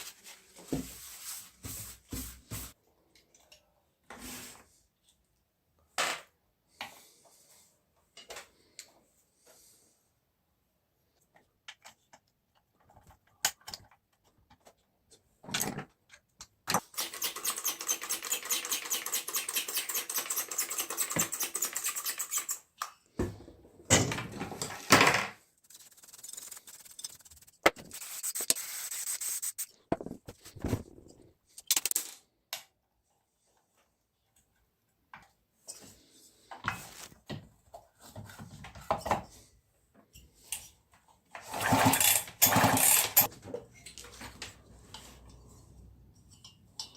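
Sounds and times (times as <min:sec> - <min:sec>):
metal parts clicking and knocking: 0:15.4 - 0:22.9, 0:31.6 - 0:32.2
rapid scraping strokes: 0:25.6 - 0:30.7.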